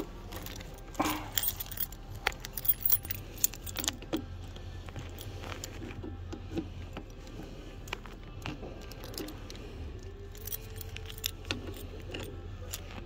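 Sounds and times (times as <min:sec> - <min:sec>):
metallic clinks of keys: 0:00.0 - 0:04.3, 0:08.4 - 0:13.0
steady low hum: 0:00.0 - 0:13.0.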